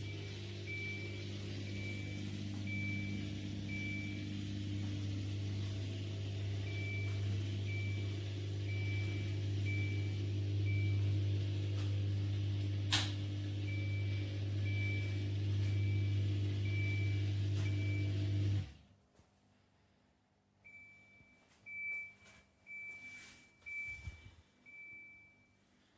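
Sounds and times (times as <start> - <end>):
dishwasher motor hum: 0.0 - 18.8.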